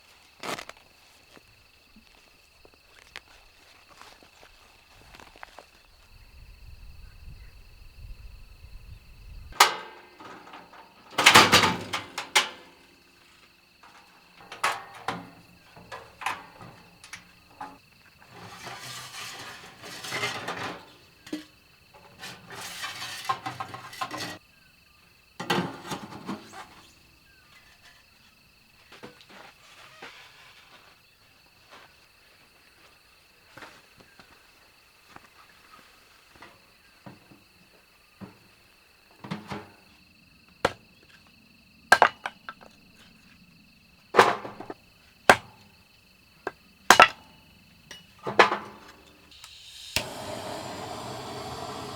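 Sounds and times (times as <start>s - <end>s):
crickets chirring: 0.0s - 51.9s.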